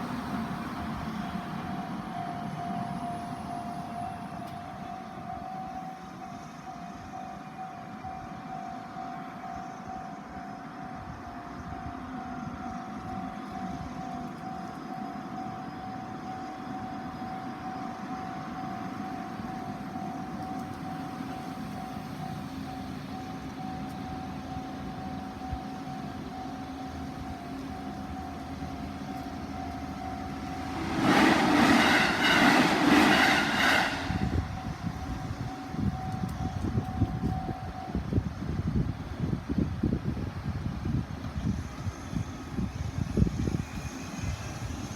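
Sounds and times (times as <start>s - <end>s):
level-crossing alarm ringing: 0.1s - 38.4s
train wheels clattering over rail joints: 30.4s - 34.6s.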